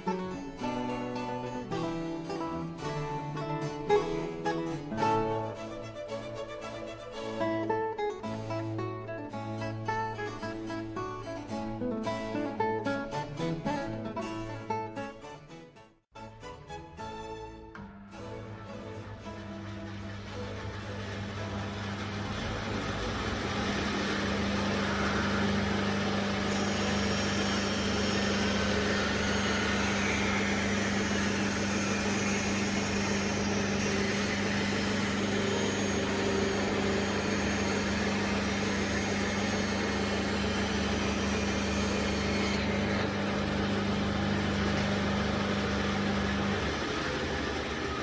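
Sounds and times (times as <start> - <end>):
bandsaw electric hum: 19.4 - 48.0.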